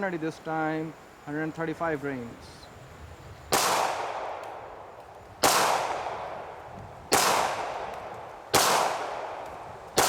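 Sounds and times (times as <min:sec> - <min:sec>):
pistol shots with echo: 0:03.5 - 0:04.5, 0:05.4 - 0:06.4, 0:07.1 - 0:09.4.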